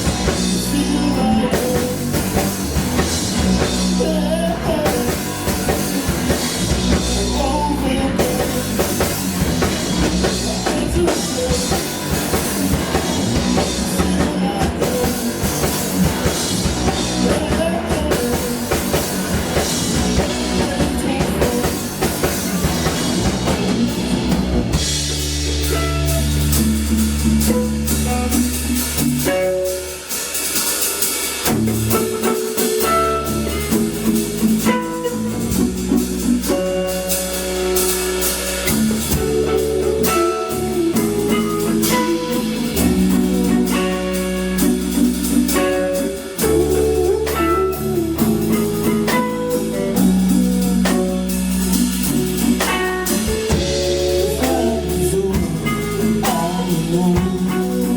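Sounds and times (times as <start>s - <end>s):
held low notes: 0.0s - 29.3s
guitar playing: 0.0s - 30.6s, 31.4s - 57.9s
drum kit beat: 0.0s - 57.9s.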